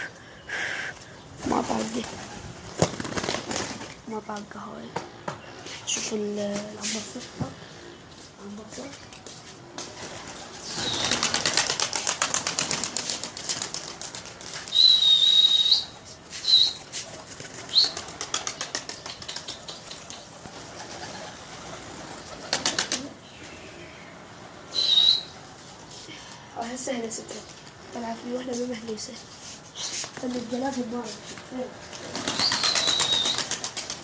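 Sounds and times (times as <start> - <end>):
pigeon wings flapping: 1.4 - 4.1, 9.8 - 15.5, 16.4 - 23.2, 30.0 - 34.0.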